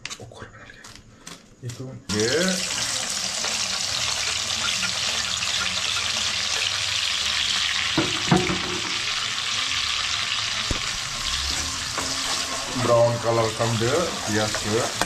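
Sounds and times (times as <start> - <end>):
food sizzling in hot oil: 2.1 - 15.0
spoon knocking against pan: 7.9 - 9.0.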